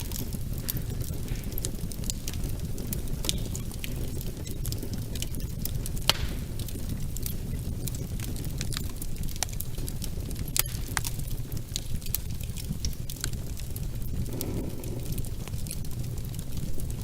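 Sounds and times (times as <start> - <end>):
fire rumbling: 0.0 - 17.0
wood crackling and popping: 0.0 - 17.0.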